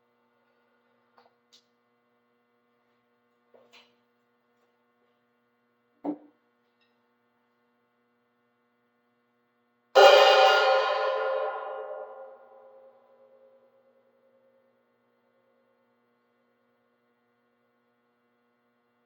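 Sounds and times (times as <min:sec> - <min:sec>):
faint electrical hum: 0:00.0 - 0:13.3.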